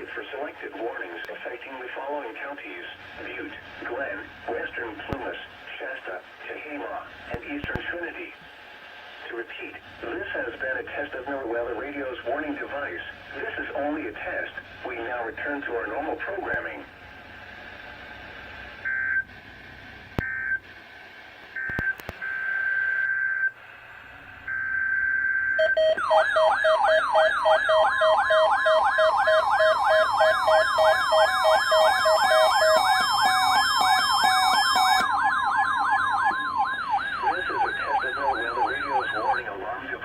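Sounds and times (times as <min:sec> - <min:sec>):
steady warning tone: 0:24.4 - 0:40.0
warbling siren alarm: 0:24.5 - 0:39.7.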